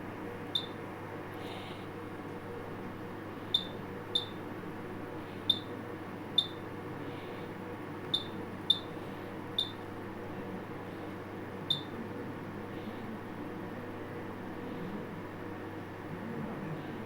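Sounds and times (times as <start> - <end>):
background hum: 0.0 - 12.0
short high keypad beeps: 0.6 - 0.8, 3.5 - 4.4, 5.5 - 5.7, 6.4 - 6.6, 8.1 - 8.9, 11.7 - 11.9.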